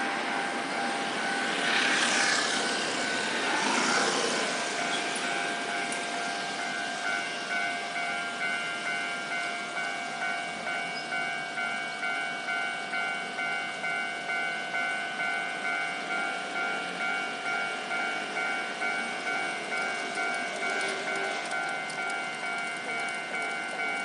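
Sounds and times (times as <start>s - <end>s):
level crossing electronic bell: 0.0s - 24.0s.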